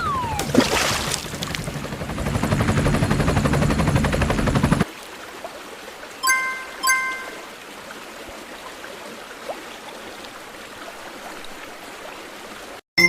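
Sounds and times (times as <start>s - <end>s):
bell-like dings: 6.2s - 7.5s.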